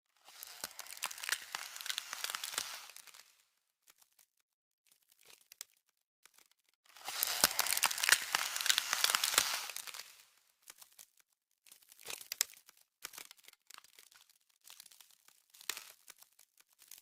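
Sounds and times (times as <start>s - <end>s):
ice crackling: 0.1s - 4.3s, 4.9s - 17.0s.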